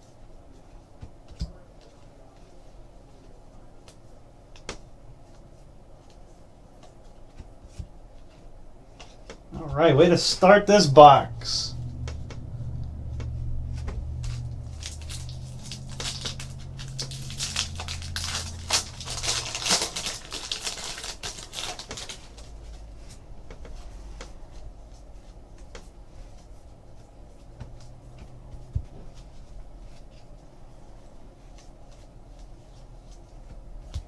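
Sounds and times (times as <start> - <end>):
wrapper crinkling: 14.1 - 22.6.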